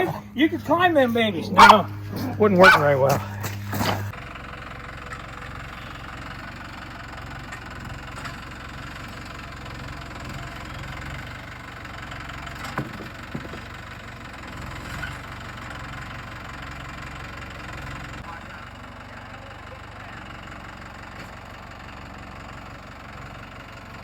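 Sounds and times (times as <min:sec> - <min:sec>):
tractor engine idling: 0:00.0 - 0:24.0.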